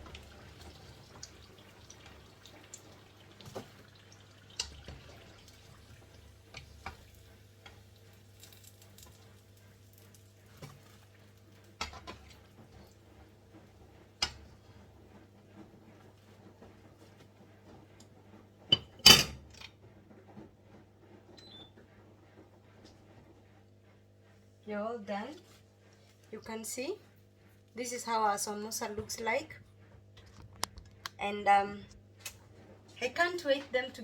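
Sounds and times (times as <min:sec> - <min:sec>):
oil sizzling in a frying pan: 0:00.0 - 0:13.0.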